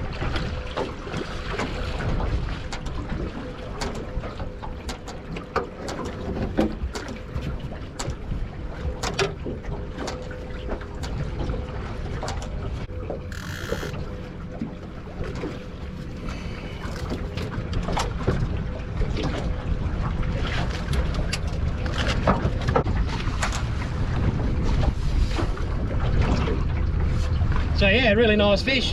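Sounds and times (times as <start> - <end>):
faint steady hum: 12.9 - 17.4
wind buffeting microphone: 14.7 - 27.8.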